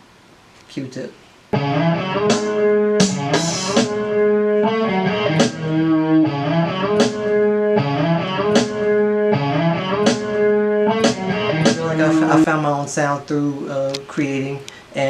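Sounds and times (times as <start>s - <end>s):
sustained guitar chords: 1.6s - 12.9s
drums: 1.6s - 13.0s.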